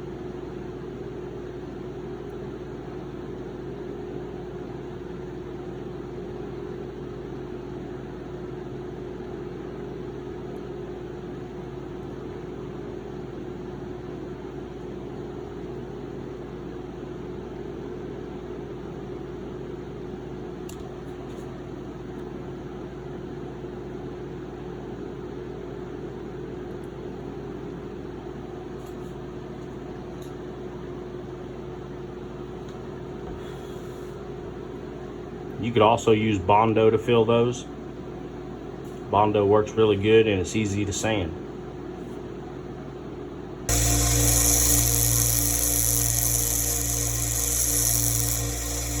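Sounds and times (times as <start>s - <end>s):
steady machine hum: 43.4s - 49.0s.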